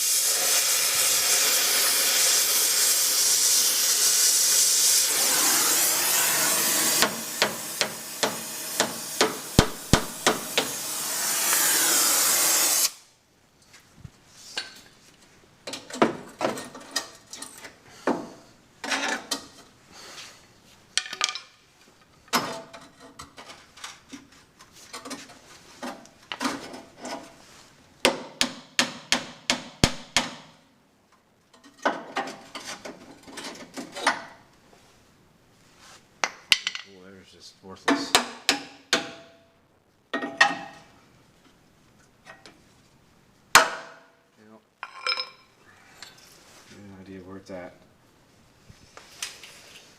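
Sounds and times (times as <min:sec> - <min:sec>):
loud steady hiss: 0:00.0 - 0:13.3, 0:27.5 - 0:30.8
hammer striking sheet metal: 0:06.9 - 0:10.8, 0:28.1 - 0:30.6
sharp knocks: 0:07.0 - 0:10.8, 0:28.1 - 0:30.6.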